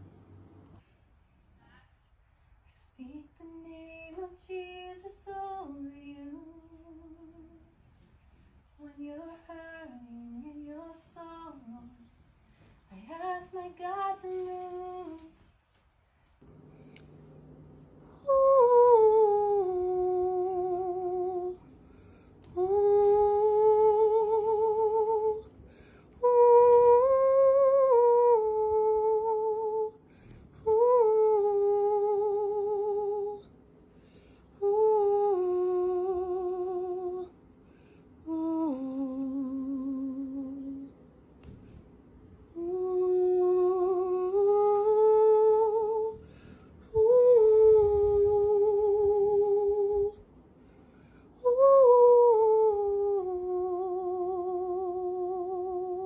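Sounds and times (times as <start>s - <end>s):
woman humming a slow tune: 18.1s - 21.7s, 22.4s - 25.5s, 26.2s - 30.0s, 30.6s - 33.5s, 34.6s - 37.4s, 38.2s - 41.0s, 42.5s - 46.2s, 46.9s - 50.2s, 51.4s - 56.0s.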